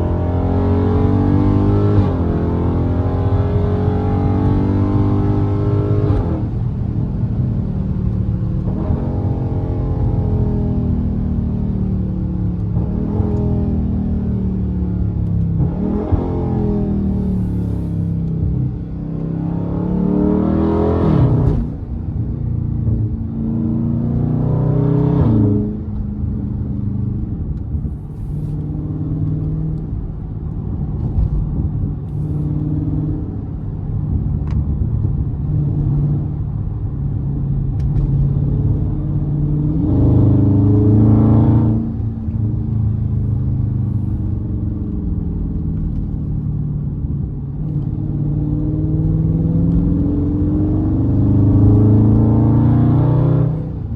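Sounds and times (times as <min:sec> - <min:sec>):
car engine accelerating hard: 0:00.0 - 0:11.1, 0:22.8 - 0:53.9.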